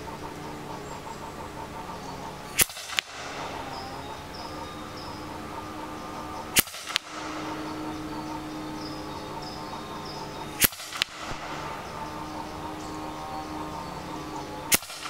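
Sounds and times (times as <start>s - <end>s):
air rifle shots: 2.5s - 5.2s, 6.5s - 9.8s, 10.5s - 13.8s, 14.7s - 15.0s.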